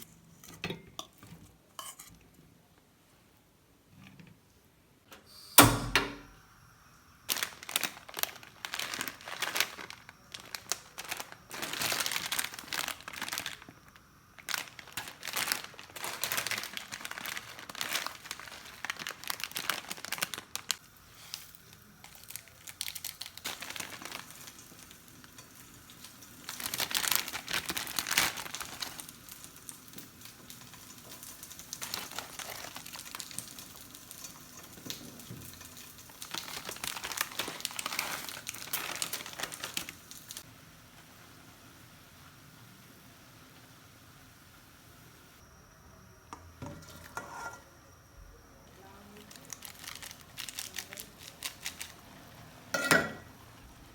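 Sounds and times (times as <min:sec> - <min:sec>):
plastic packaging crinkling and tearing: 0:07.3 - 0:40.4, 0:49.1 - 0:52.4.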